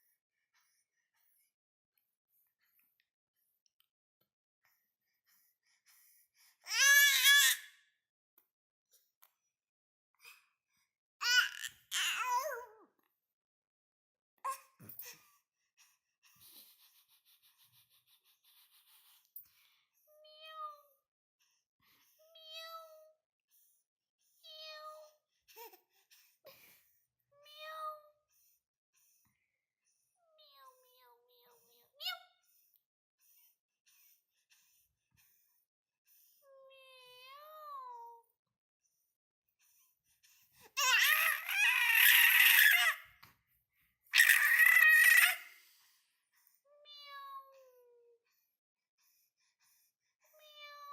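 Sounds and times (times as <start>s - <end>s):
baby vocal noises: 11.2s - 12.9s, 40.7s - 43.1s, 44.2s - 45.6s.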